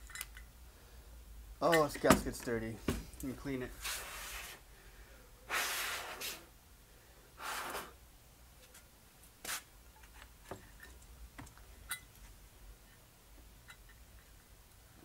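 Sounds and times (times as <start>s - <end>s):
short hissing air puffs: 3.8s - 4.6s, 5.5s - 6.5s, 7.4s - 8.0s.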